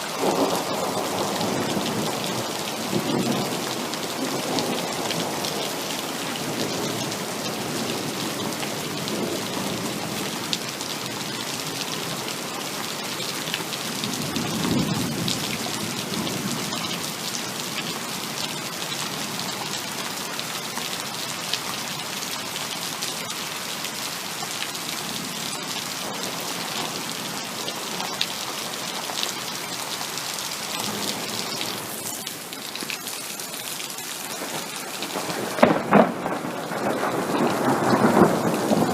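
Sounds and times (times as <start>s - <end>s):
heavy rain: 0.0s - 38.9s
distant thunder rumble: 34.4s - 38.9s.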